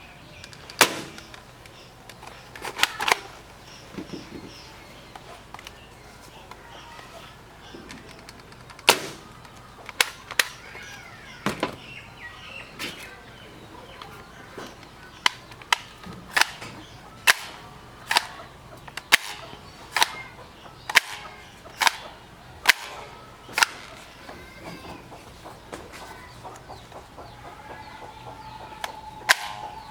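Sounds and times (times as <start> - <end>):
toy foam blaster shots: 0.7 - 1.4, 8.7 - 10.8, 15.2 - 24.1, 29.3 - 29.8.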